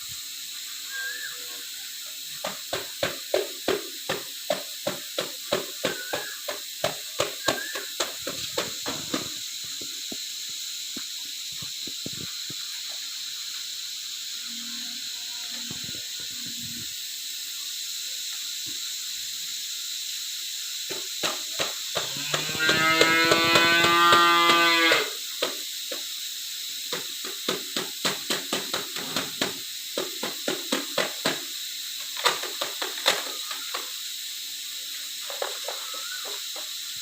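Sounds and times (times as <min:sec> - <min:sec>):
steady hiss: 0:00.0 - 0:37.0
sharp knocks and clicks: 0:20.9 - 0:24.6, 0:26.9 - 0:31.4.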